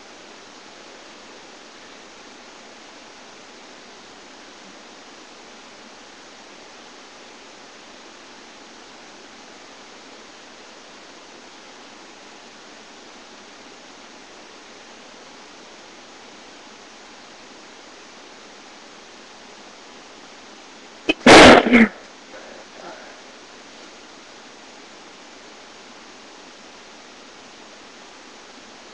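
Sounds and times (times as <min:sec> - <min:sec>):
microphone hiss: 0:00.0 - 0:28.9
person sneezing: 0:21.1 - 0:23.2.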